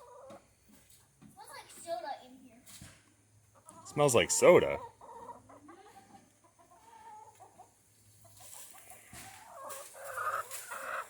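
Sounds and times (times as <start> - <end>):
chickens clucking: 0.0 - 1.2, 2.8 - 11.0.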